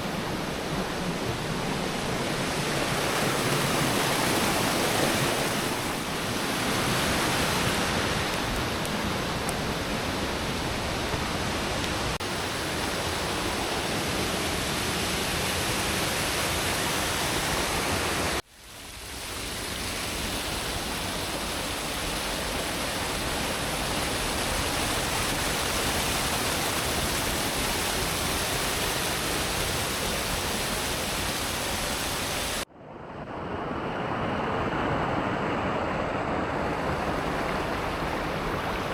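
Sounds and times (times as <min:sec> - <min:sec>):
waterfall rushing: 0:00.0 - 0:18.4.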